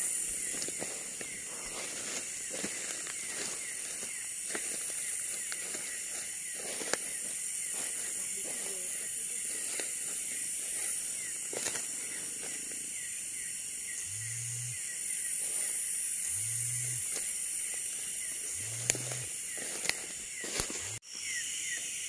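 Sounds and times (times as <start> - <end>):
insect chorus shrilling: 0.0 - 22.0
small chirps: 13.9 - 22.0.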